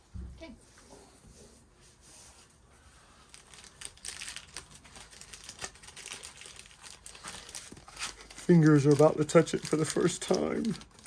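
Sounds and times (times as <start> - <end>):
plastic wrapping crinkling: 2.9 - 11.0.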